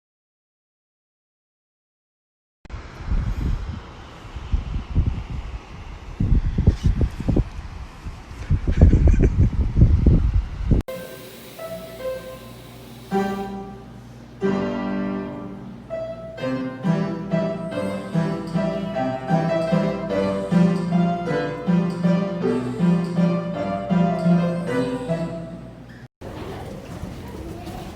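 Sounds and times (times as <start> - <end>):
piano background music: 10.9 - 25.9.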